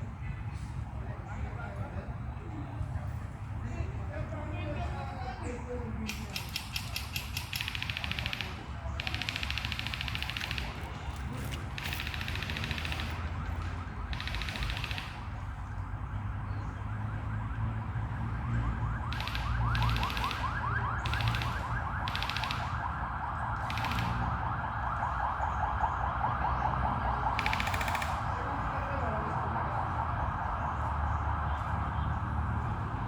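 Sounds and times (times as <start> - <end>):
airsoft gun full-auto bursts: 6.1 - 13.5, 14.1 - 15.3, 19.1 - 22.8, 23.6 - 24.3, 27.3 - 28.3.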